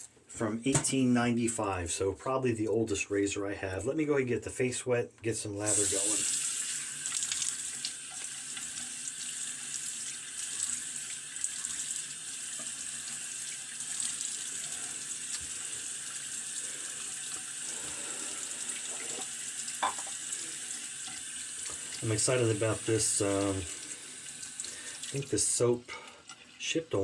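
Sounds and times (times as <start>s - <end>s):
sink tap running: 5.7s - 27.0s.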